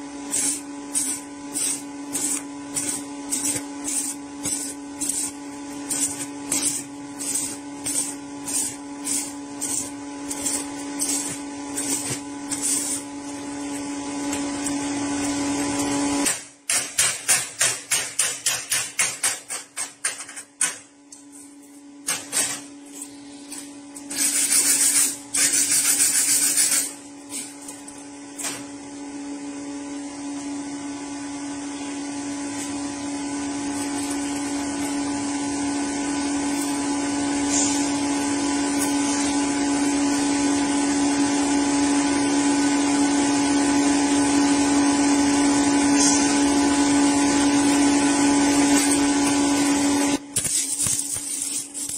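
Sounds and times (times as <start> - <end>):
power tool motor humming: 0.0 - 16.4, 45.8 - 51.9.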